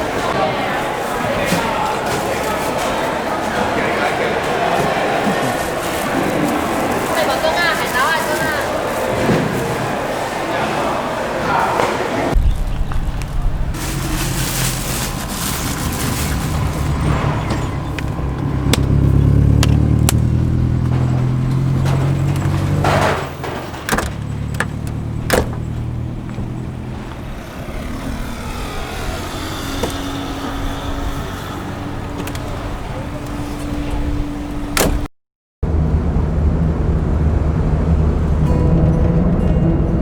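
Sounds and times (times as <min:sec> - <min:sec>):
engine low rumble: 0:12.3 - 0:35.0, 0:35.6 - 0:40.0
sharp clicks and knocks: 0:19.6 - 0:25.9.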